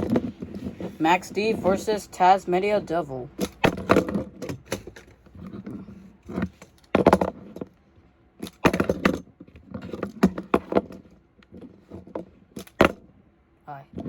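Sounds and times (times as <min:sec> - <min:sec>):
toy trucks clattering: 0:03.4 - 0:07.8.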